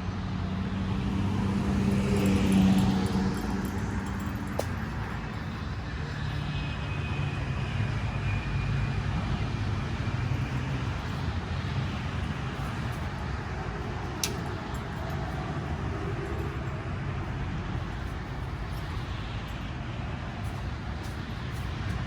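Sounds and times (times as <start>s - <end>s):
low engine rumble: 0.0s - 7.8s.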